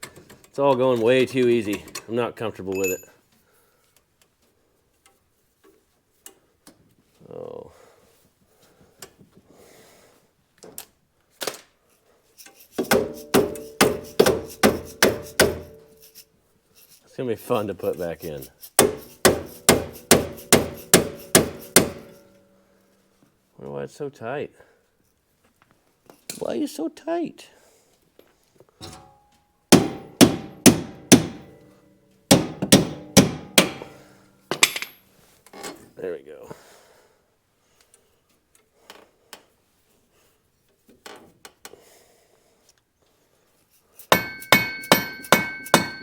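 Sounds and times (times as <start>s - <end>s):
hammer striking metal: 12.8s - 16.1s, 18.8s - 22.4s, 29.7s - 35.0s, 44.1s - 46.0s.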